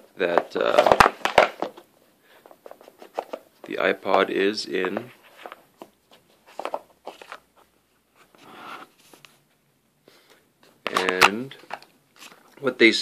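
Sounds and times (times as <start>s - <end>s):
cardboard rustling scrape: 8.2s - 9.2s.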